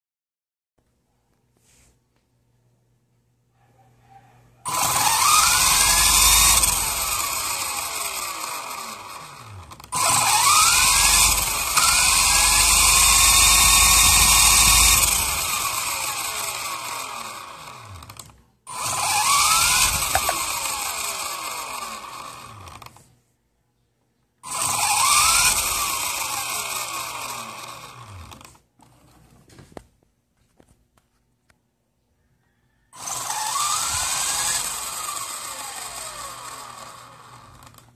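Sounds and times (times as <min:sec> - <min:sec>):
toy helicopter motor whine: 0:04.6 - 0:23.0, 0:24.4 - 0:29.0, 0:32.9 - 0:37.9.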